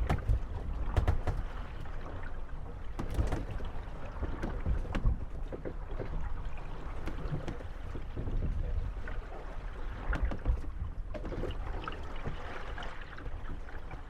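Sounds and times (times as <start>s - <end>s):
wooden boats creaking and knocking: 0.0s - 14.0s.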